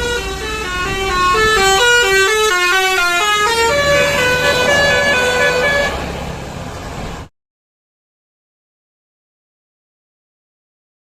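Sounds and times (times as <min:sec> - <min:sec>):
bus musical horn melody: 0:00.0 - 0:06.4.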